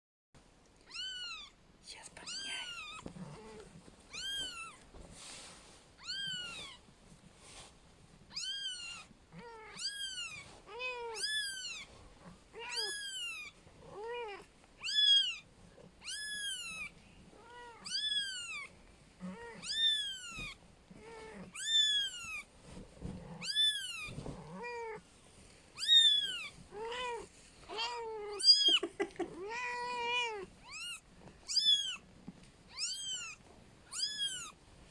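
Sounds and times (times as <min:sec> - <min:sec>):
kittens meowing: 0:12.6 - 0:15.4, 0:19.3 - 0:22.4, 0:25.8 - 0:32.0, 0:32.7 - 0:34.6.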